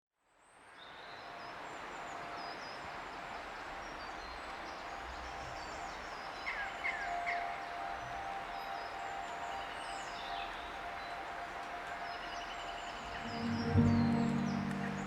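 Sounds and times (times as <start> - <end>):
steady background hiss: 0.5 - 15.0
birds chirping: 5.1 - 15.0.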